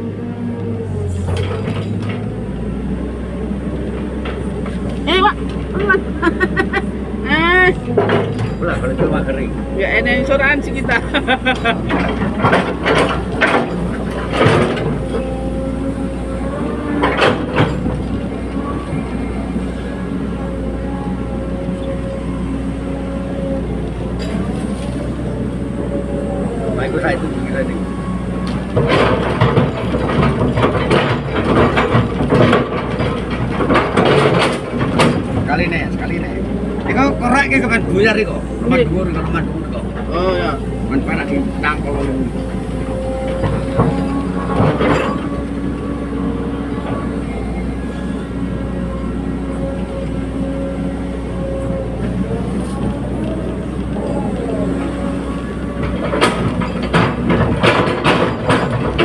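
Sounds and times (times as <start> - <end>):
diesel engine running: 0.0 - 59.0
metallic clanks and knocks: 0.6 - 2.6, 7.7 - 9.7, 10.4 - 20.2, 21.2 - 25.2, 26.8 - 49.0, 51.4 - 59.0
sharp metal knocks and clanks: 11.7 - 15.3, 28.0 - 35.7, 55.8 - 59.0.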